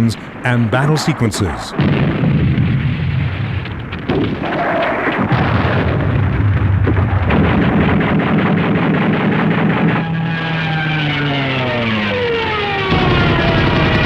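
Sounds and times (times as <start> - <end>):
explosions: 0.0 - 14.0
gunfire: 0.0 - 14.0
low steady drone: 5.9 - 14.0.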